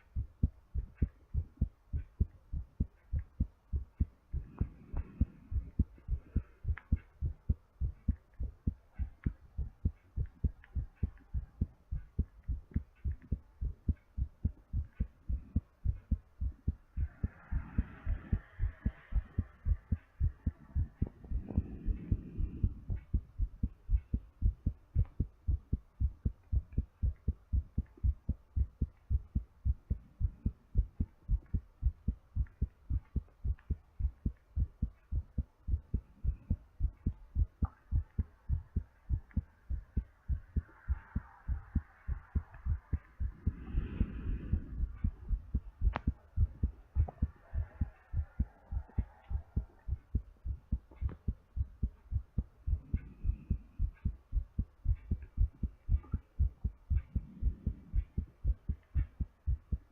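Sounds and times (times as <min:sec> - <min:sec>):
fast heartbeat thumps: 0:00.0 - 0:59.9
breath rushing: 0:41.5 - 0:49.8.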